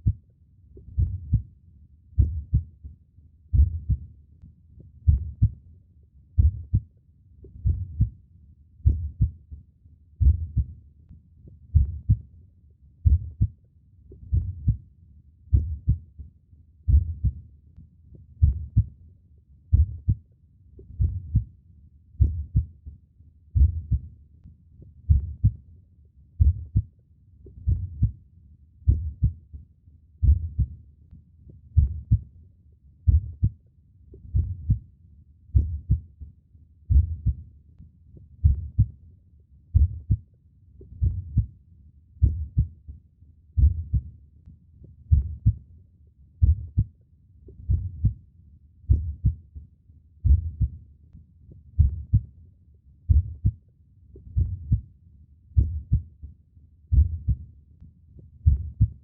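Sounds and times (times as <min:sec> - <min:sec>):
heartbeat thumps: 0:00.0 - 0:00.2, 0:00.8 - 0:01.5, 0:02.2 - 0:02.8, 0:03.5 - 0:04.1, 0:05.0 - 0:05.6, 0:06.4 - 0:06.9, 0:07.5 - 0:08.1, 0:08.8 - 0:09.4, 0:10.2 - 0:10.8, 0:11.7 - 0:12.2, 0:13.0 - 0:13.5, 0:14.2 - 0:14.8, 0:15.5 - 0:16.0, 0:16.9 - 0:17.4, 0:18.4 - 0:18.9, 0:19.7 - 0:20.2, 0:20.8 - 0:21.5, 0:22.2 - 0:22.7, 0:23.6 - 0:24.1, 0:25.0 - 0:25.6, 0:26.4 - 0:26.9, 0:27.5 - 0:28.2, 0:28.9 - 0:29.4, 0:30.2 - 0:30.8, 0:31.7 - 0:32.2, 0:33.1 - 0:33.6, 0:34.2 - 0:34.8, 0:35.5 - 0:36.1, 0:36.9 - 0:37.4, 0:38.4 - 0:38.9, 0:39.7 - 0:40.2, 0:40.9 - 0:41.5, 0:42.2 - 0:42.7, 0:43.6 - 0:44.1, 0:45.1 - 0:45.6, 0:46.4 - 0:46.9, 0:47.6 - 0:48.2, 0:48.9 - 0:49.4, 0:50.2 - 0:50.8, 0:51.8 - 0:52.3, 0:53.1 - 0:53.6, 0:54.3 - 0:54.8, 0:55.6 - 0:56.1, 0:56.9 - 0:57.4, 0:58.4 - 0:59.0.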